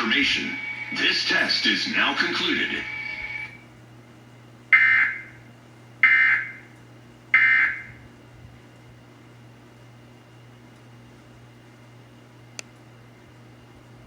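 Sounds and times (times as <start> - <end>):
harsh buzzing data bursts: 0.0 - 3.6.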